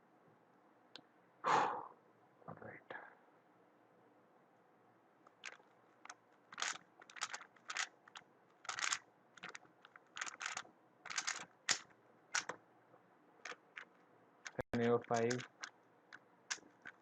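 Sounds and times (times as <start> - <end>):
puzzle cube clicking and scraping: 5.3 - 12.6, 13.4 - 17.0.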